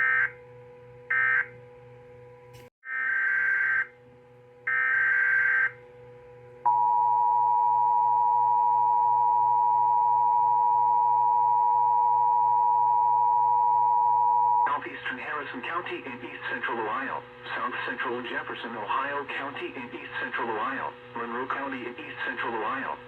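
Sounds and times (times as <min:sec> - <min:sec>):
two-tone attention signal: 0:06.7 - 0:14.7.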